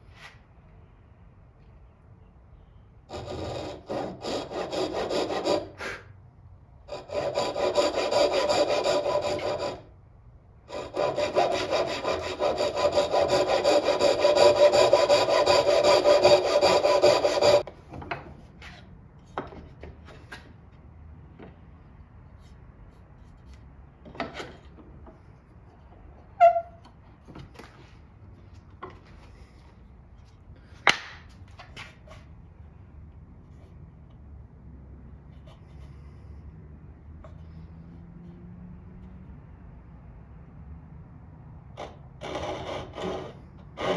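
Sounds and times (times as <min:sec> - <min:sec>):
hand tool strokes on wood: 0:06.9 - 0:09.8, 0:10.7 - 0:17.6.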